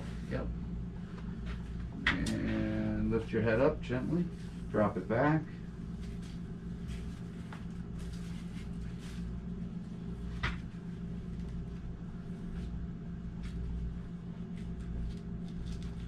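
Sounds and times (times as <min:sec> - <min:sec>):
steady low hum: 0:00.0 - 0:16.0
soft handling rustles: 0:05.8 - 0:16.0.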